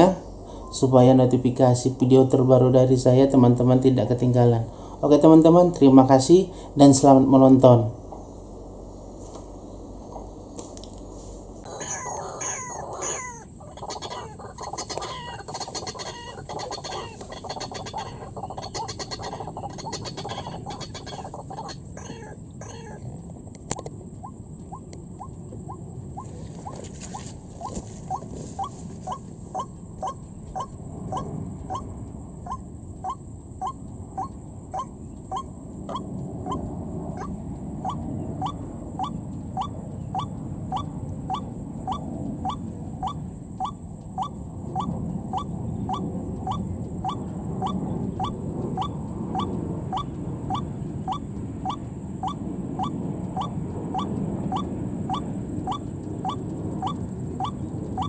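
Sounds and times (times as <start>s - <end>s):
bird calling short rising notes: 0.0s - 2.0s, 6.0s - 23.1s, 23.8s - 58.0s
low rushing noise: 0.0s - 58.0s.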